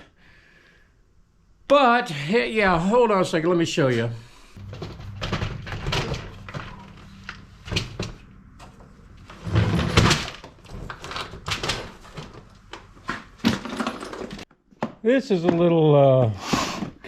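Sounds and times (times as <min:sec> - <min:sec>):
steady low hum: 0:04.4 - 0:14.4
objects knocking and clattering: 0:04.6 - 0:15.0.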